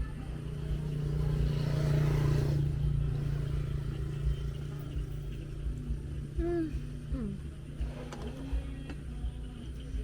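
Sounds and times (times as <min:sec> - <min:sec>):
vehicle passing: 0:00.1 - 0:05.8.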